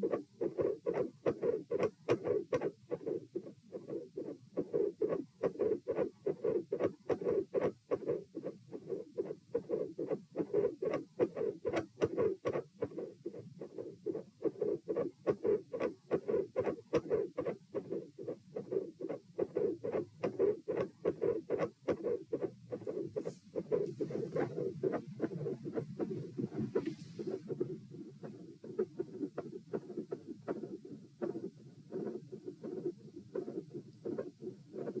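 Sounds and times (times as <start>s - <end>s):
heartbeat through stethoscope: 0.0s - 35.0s.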